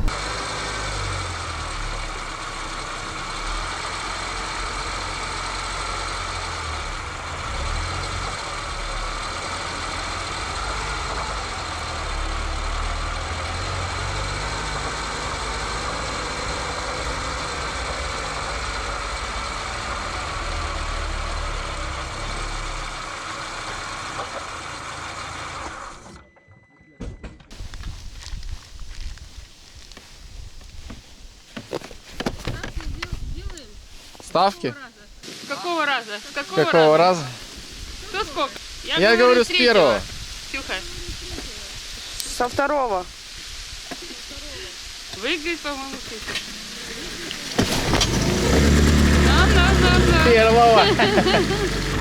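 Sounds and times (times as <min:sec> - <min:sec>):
vehicle engine rumble: 0:00.0 - 0:26.1, 0:27.5 - 0:35.2, 0:37.2 - 0:52.0
road noise: 0:00.0 - 0:26.2, 0:27.5 - 0:52.0.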